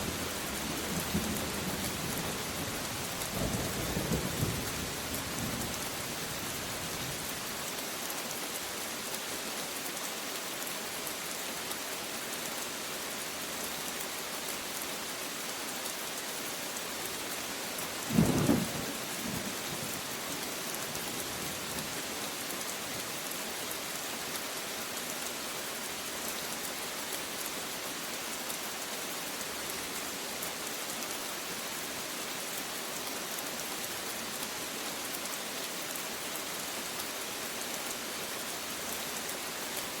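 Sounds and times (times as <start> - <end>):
steady rain falling: 0.0 - 40.0.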